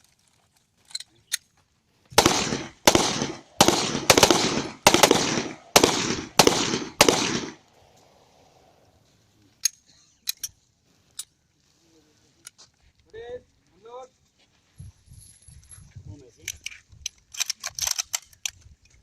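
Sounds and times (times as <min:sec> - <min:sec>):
gunshots with echo: 0:02.2 - 0:07.6
faint gun clicks: 0:16.4 - 0:19.0.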